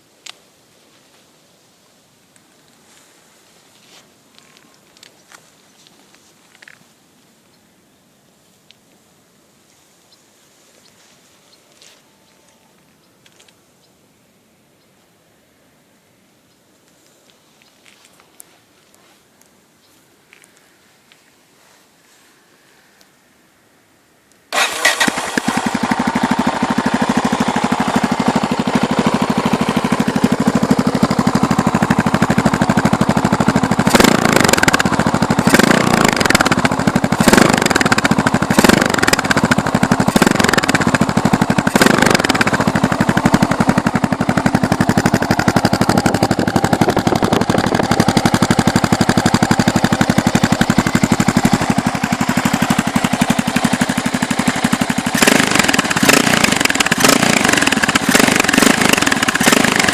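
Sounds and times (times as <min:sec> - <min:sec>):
motorcycle engine revving: 0:24.5 - 0:59.9
motorcycle engine idling: 0:24.6 - 0:59.9.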